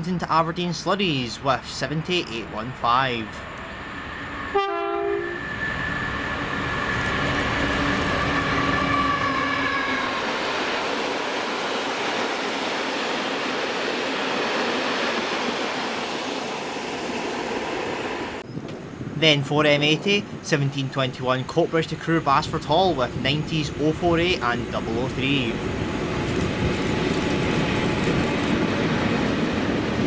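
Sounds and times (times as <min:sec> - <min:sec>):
locomotive engine passing: 0:01.3 - 0:18.4
train horn blast: 0:04.5 - 0:05.7, 0:08.2 - 0:10.2.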